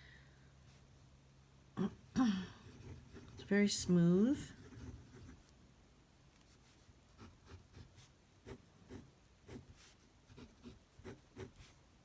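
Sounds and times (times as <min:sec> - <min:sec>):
pen nib writing on paper: 0:04.4 - 0:05.4.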